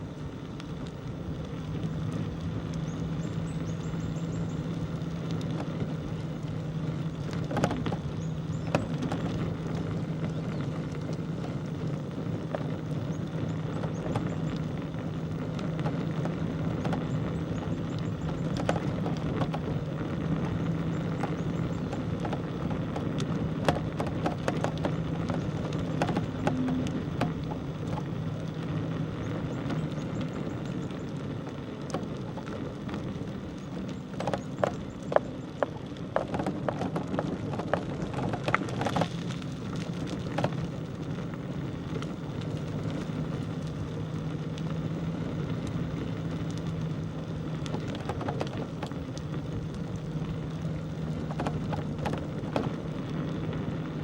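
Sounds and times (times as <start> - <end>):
bicycle tyres on rough road: 0.0 - 54.0
low hum: 0.0 - 54.0
clicks and rattles: 7.1 - 11.6, 15.5 - 28.6, 31.7 - 40.7, 47.5 - 52.9.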